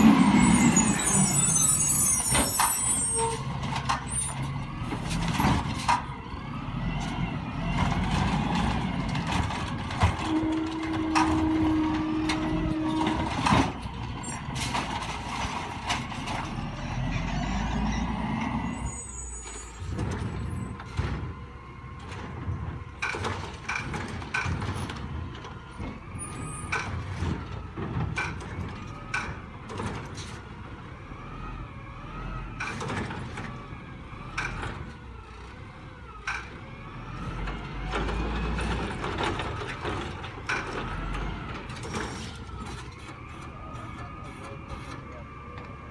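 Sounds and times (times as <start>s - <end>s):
garbage truck engine running: 0.0s - 18.8s.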